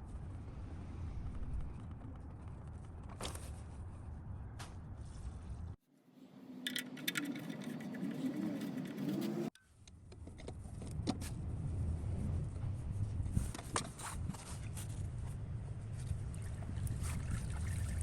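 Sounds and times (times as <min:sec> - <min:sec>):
metal tools clinking and rattling: 0:06.6 - 0:09.2
low steady rumble: 0:09.9 - 0:18.0.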